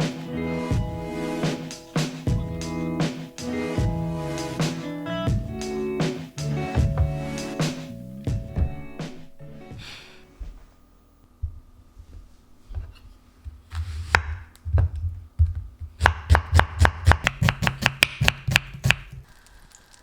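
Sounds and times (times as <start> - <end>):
knife chopping on cutting board: 16.0 - 19.1.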